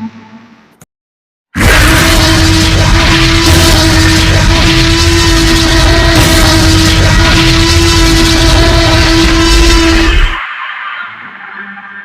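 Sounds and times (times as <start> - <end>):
loud noise with low hum: 1.6 - 10.4.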